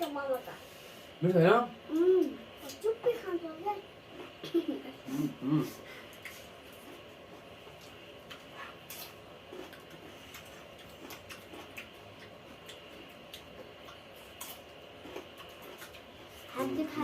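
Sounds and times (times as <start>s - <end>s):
people eating: 4.0s - 17.0s.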